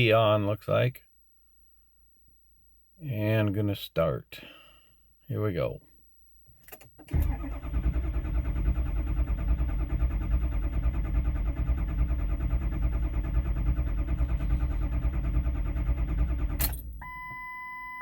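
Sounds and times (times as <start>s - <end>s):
diesel engine cranking: 7.0s - 17.0s.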